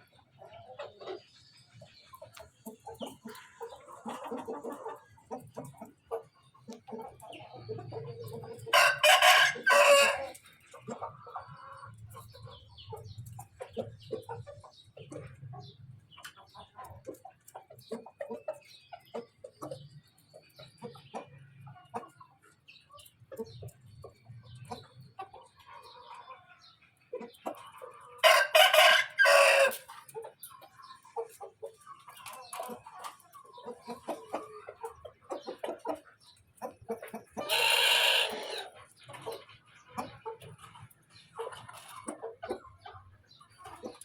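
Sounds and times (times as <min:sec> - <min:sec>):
chickens clucking: 0:00.0 - 0:44.0
rooster crowing loudly: 0:08.8 - 0:10.3, 0:28.2 - 0:29.8, 0:37.5 - 0:38.6.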